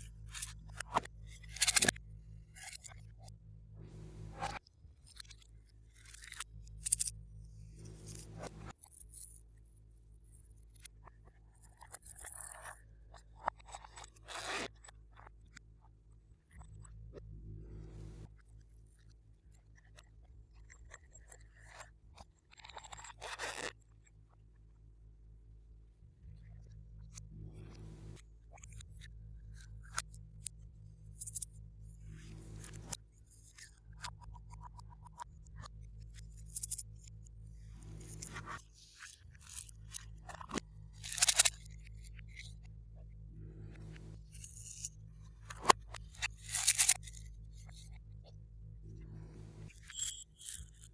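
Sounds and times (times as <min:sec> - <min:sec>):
low steady hum: 0:00.0 - 0:08.8, 0:16.2 - 0:19.0, 0:25.1 - 0:50.9.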